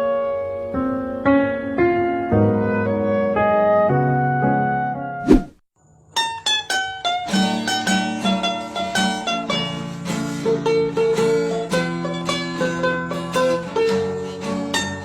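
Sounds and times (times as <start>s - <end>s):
plucked string instrument music: 6.2s - 15.0s.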